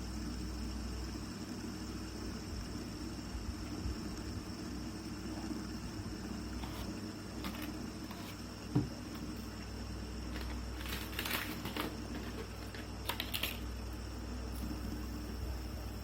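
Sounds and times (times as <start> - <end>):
soft thump: 8.7 - 9.0.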